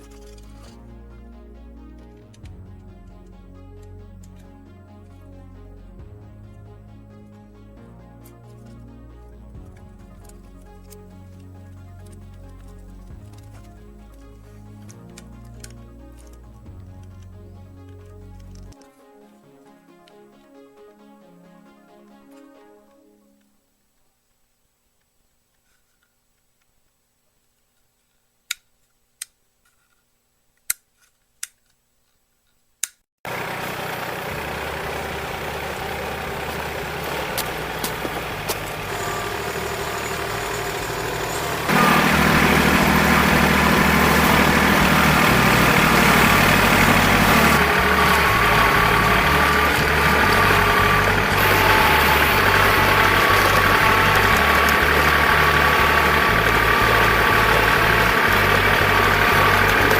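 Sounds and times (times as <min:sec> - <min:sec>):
sharp clicks: 0:32.8 - 0:33.0
tractor diesel engine running: 0:33.3 - 0:59.9.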